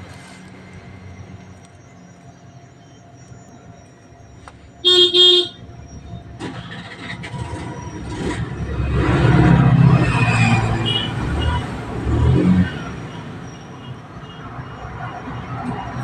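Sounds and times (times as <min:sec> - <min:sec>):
road traffic noise: 0:00.0 - 0:16.0
vehicle horn toots: 0:04.8 - 0:05.6, 0:10.8 - 0:11.6.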